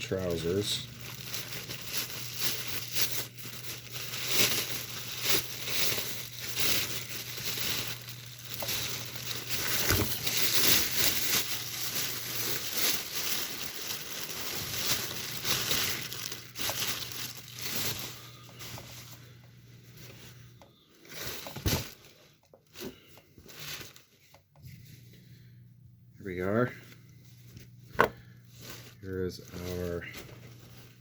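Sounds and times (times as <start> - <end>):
packaging crinkling: 0.0 - 24.5, 26.7 - 31.0.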